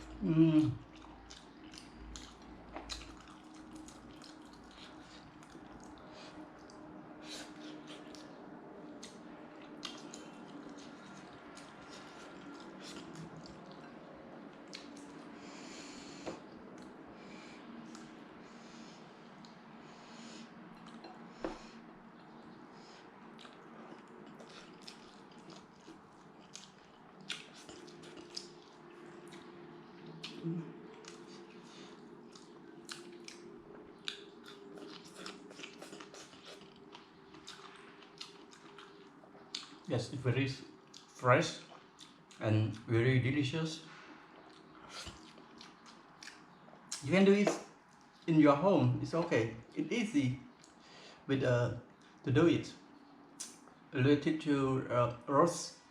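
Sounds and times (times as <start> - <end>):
person chewing food: 0.0 - 39.9, 40.7 - 42.8, 43.9 - 48.3, 50.5 - 50.9
faint steady hum: 0.0 - 55.9
lip smacks: 53.4 - 53.8.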